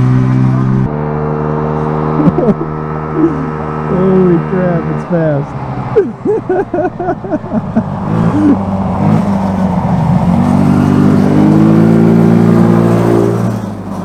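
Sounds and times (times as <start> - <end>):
scooter engine under throttle: 0.0 - 14.0.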